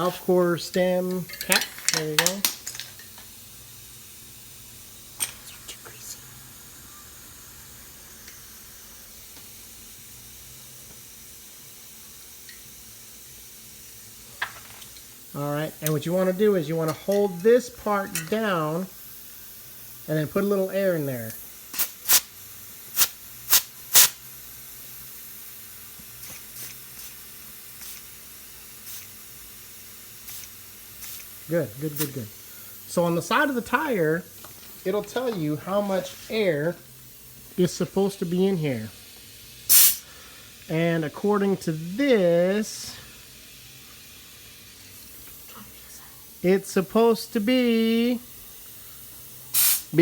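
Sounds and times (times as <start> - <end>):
air hose hissing: 20.4 - 24.3, 26.0 - 50.0.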